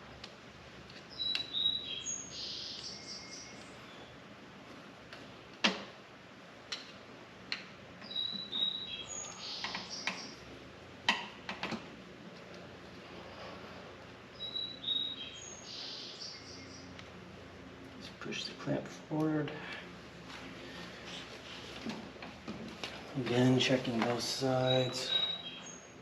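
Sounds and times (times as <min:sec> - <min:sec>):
small birds chirping: 0:00.9 - 0:04.2, 0:08.0 - 0:10.5, 0:14.2 - 0:17.1, 0:23.0 - 0:26.0
sharp clicks and knocks: 0:11.0 - 0:11.9.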